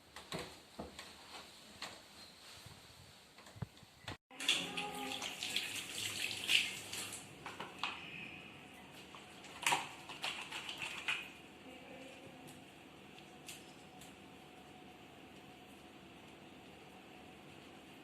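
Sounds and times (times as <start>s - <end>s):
tap water running and splashing: 4.3s - 7.9s, 9.0s - 11.4s.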